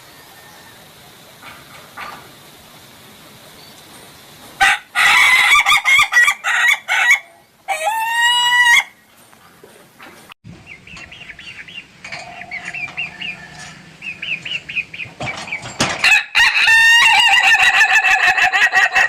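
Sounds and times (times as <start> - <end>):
rooster chirping: 0.0 - 1.1, 4.6 - 9.1, 10.6 - 19.0
rooster laughing crow: 4.6 - 8.9, 16.0 - 19.0.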